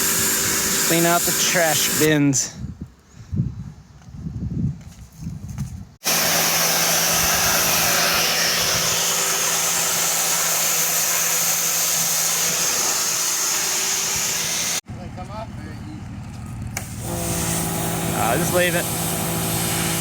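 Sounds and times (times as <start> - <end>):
pressure washer machine hum: 0.0 - 2.1, 6.0 - 14.8, 16.7 - 20.0
pressure washer water jet hissing: 0.0 - 2.3, 6.0 - 14.8, 16.8 - 20.0.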